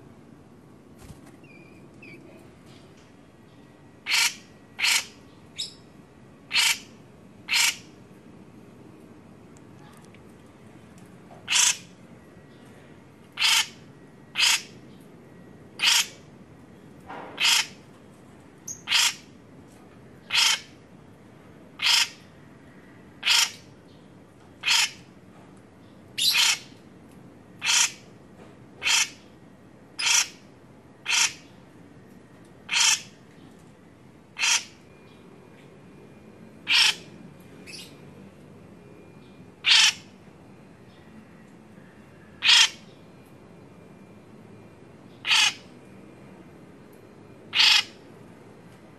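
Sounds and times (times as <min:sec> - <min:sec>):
bird giving harsh calls: 0:04.0 - 0:05.8, 0:06.5 - 0:06.9, 0:07.5 - 0:07.9, 0:11.5 - 0:11.9, 0:13.4 - 0:13.8, 0:14.4 - 0:14.7, 0:15.8 - 0:16.2, 0:17.4 - 0:17.8, 0:18.7 - 0:19.3, 0:20.3 - 0:20.7, 0:21.8 - 0:22.2, 0:23.2 - 0:23.7, 0:24.6 - 0:25.0, 0:26.2 - 0:26.7, 0:27.6 - 0:28.0, 0:28.8 - 0:29.3, 0:30.0 - 0:30.4, 0:31.0 - 0:31.5, 0:32.7 - 0:33.2, 0:34.4 - 0:34.8, 0:36.7 - 0:37.1, 0:39.6 - 0:40.1, 0:42.4 - 0:42.9, 0:45.2 - 0:45.7, 0:47.5 - 0:48.0.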